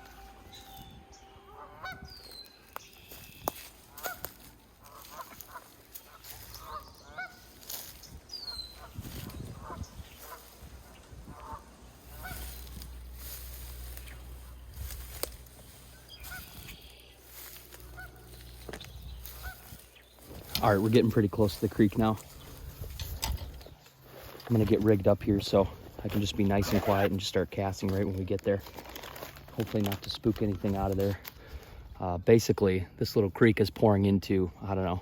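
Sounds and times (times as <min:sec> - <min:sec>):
geese honking: 0:00.0 - 0:27.7
footsteps through brush: 0:00.0 - 0:31.7.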